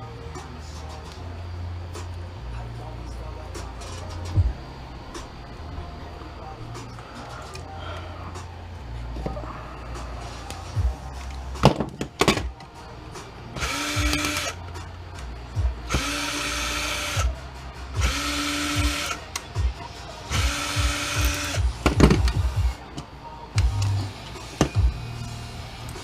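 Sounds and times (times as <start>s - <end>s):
electric drill whining: 13.6s - 14.6s, 15.9s - 17.3s, 18.0s - 19.3s, 20.3s - 21.7s.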